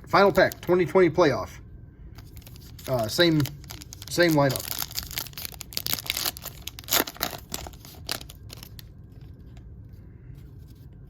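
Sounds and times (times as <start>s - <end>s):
pack wrapper crinkling and tearing: 2.2s - 9.3s.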